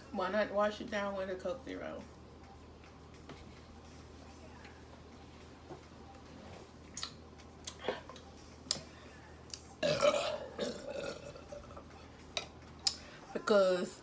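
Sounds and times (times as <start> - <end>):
woman burping: 9.8 - 11.8.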